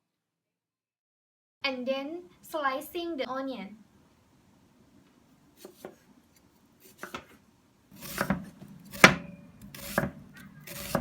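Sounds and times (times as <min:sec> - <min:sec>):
knife slicing onion: 0:05.6 - 0:06.0, 0:06.8 - 0:11.0
knife knocking on cutting board: 0:08.2 - 0:11.0.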